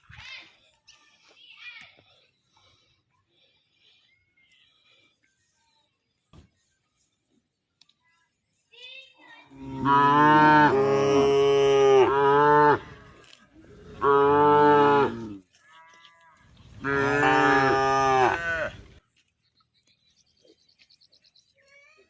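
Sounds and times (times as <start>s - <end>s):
cow mooing: 9.5s - 13.1s, 13.8s - 16.0s, 16.8s - 18.8s.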